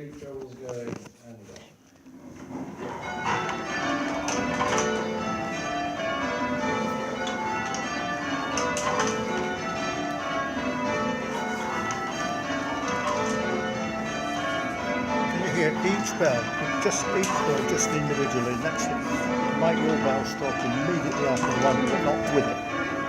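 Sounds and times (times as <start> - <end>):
church bells ringing rounds: 2.6 - 23.0.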